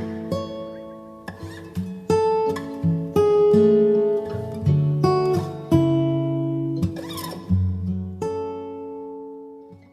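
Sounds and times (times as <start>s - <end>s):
acoustic guitar notes ringing: 0.0s - 9.9s.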